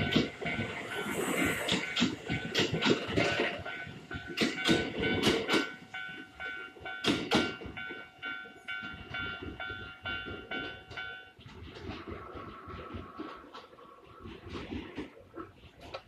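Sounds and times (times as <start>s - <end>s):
train wheels clacking: 0.0s - 15.2s.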